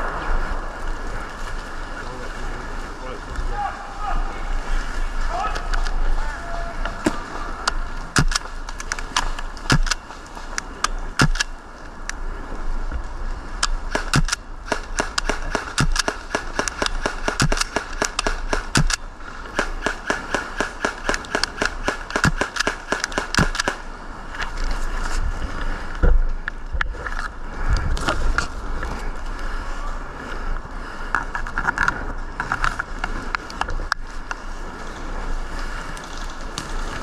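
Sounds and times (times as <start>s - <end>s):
airsoft guns firing: 8.1s - 10.1s, 11.2s - 11.5s, 13.8s - 23.9s.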